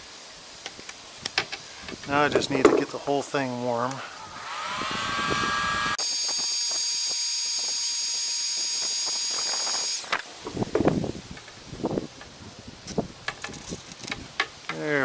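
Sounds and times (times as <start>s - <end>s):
heat gun fan whine: 4.1s - 11.9s.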